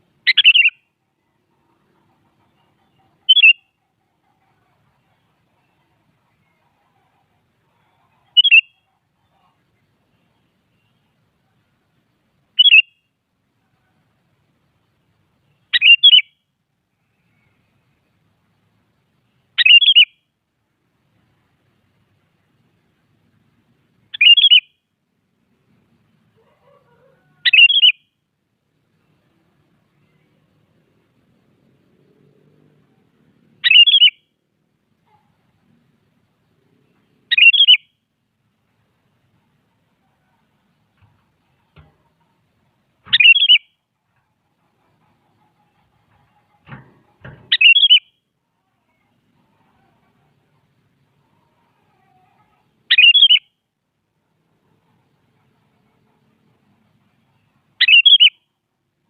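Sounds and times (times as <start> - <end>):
bird singing: 0.2 - 0.9, 2.0 - 3.8, 7.8 - 11.2, 12.6 - 13.1, 14.8 - 16.4, 19.2 - 20.2, 24.1 - 24.8, 26.4 - 28.1, 33.6 - 34.3, 36.7 - 38.0, 43.0 - 43.8, 46.7 - 48.3, 52.8 - 53.6, 57.2 - 58.5
bird singing whistled phrases: 0.3 - 0.8, 3.3 - 3.6, 12.6 - 13.0, 15.8 - 16.3, 19.6 - 20.1, 24.1 - 24.7, 27.4 - 28.0, 33.6 - 34.2, 37.3 - 37.9, 43.1 - 43.7, 47.5 - 48.1, 52.9 - 53.5, 57.8 - 58.4.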